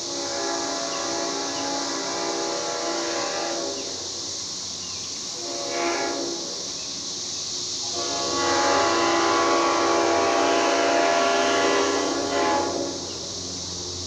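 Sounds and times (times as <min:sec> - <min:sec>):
locomotive air horn blasts: 0:00.0 - 0:04.1, 0:05.3 - 0:06.7, 0:07.8 - 0:13.3
steady hiss: 0:00.0 - 0:14.0.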